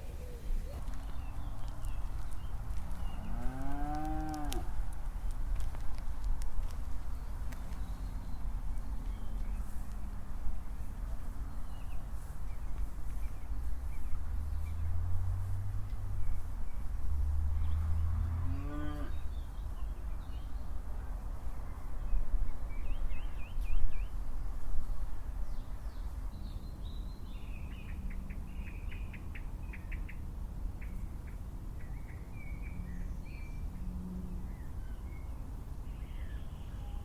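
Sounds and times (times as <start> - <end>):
cow mooing: 18.4 - 19.2.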